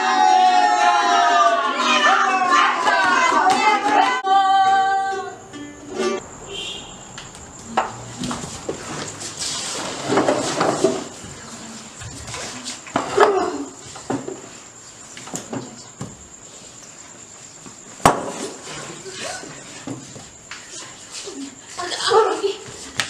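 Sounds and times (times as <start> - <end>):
people singing together: 0.0 - 6.2.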